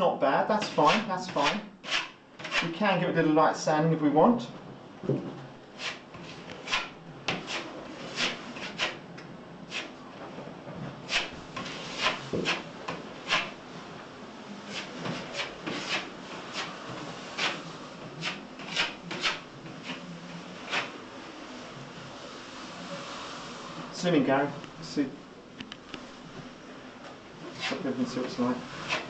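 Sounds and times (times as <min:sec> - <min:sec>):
hand tool scraping filler on wall: 0:00.6 - 0:02.7, 0:05.8 - 0:09.0, 0:11.1 - 0:13.6, 0:14.7 - 0:17.6, 0:18.2 - 0:20.9, 0:27.5 - 0:27.9, 0:28.6 - 0:29.0.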